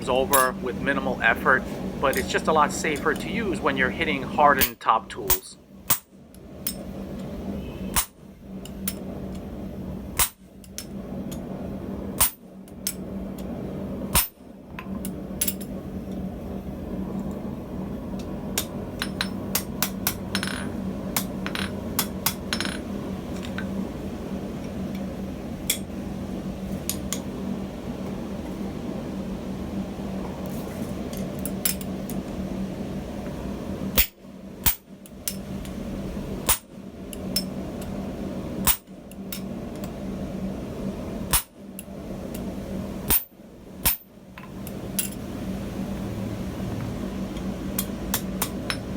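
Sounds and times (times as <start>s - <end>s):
steady low hum: 0.0s - 48.9s
hammer striking metal: 4.6s - 6.1s.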